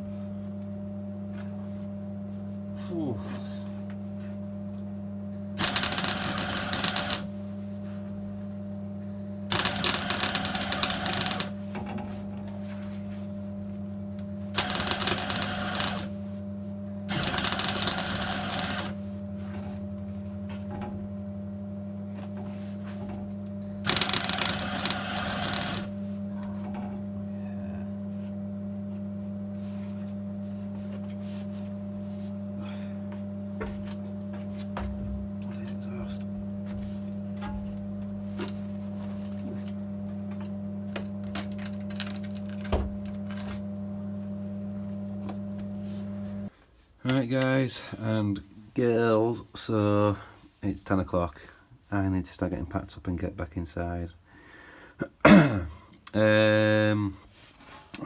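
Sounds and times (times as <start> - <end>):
steady electrical hum: 0.0 - 58.0
welder crackling: 5.6 - 7.6, 9.5 - 11.7, 14.6 - 16.3, 17.1 - 19.2, 23.9 - 26.1.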